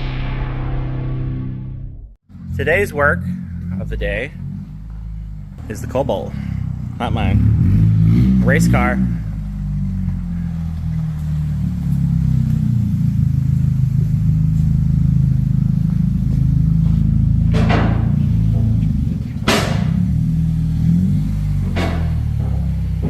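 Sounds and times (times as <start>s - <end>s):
music with heavy bass and drums: 0.0s - 2.0s, 15.8s - 23.0s
sharp hits: 0.0s - 5.8s, 9.0s - 23.0s.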